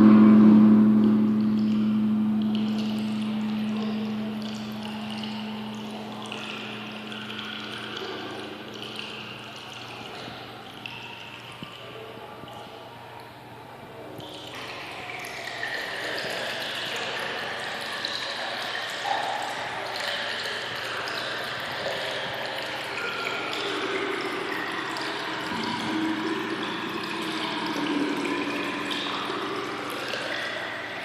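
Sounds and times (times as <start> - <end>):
short ringing pings: 0.0 - 5.7
water running and gurgling: 0.0 - 31.0.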